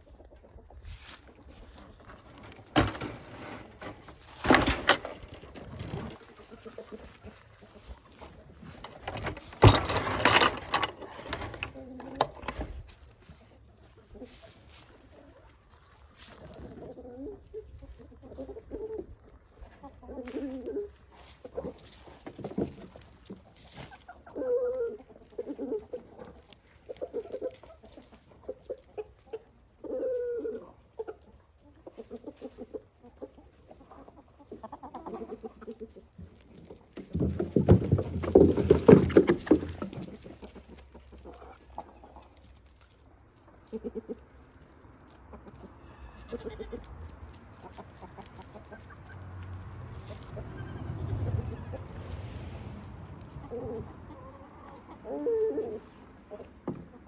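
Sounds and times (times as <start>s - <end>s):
chickens clucking: 0.0s - 57.0s
rustling noise: 0.8s - 17.0s.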